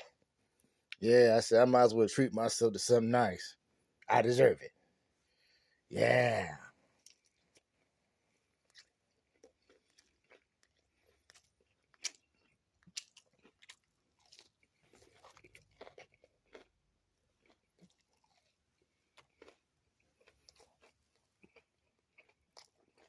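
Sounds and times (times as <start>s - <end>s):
person eating crunchy food: 6.0s - 23.0s.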